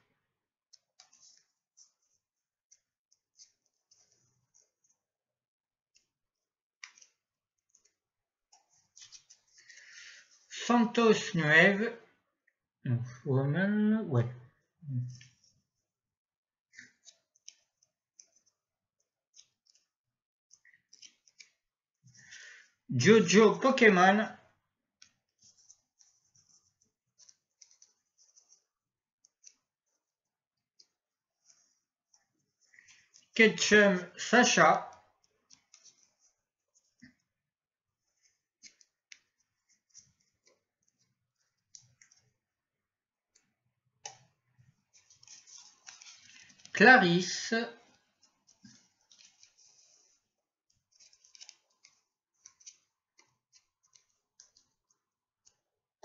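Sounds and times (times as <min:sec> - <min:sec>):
faint irregular clicks: 0:00.7 - 0:05.1, 0:06.8 - 0:10.5, 0:16.7 - 0:22.7, 0:25.0 - 0:33.4, 0:34.9 - 0:37.4, 0:38.0 - 0:42.5, 0:43.2 - 0:46.7, 0:47.8 - 0:55.7
soft handling noises: 0:00.7 - 0:05.2, 0:05.9 - 0:10.6, 0:25.0 - 0:33.4, 0:34.9 - 0:46.8, 0:47.8 - 0:55.8.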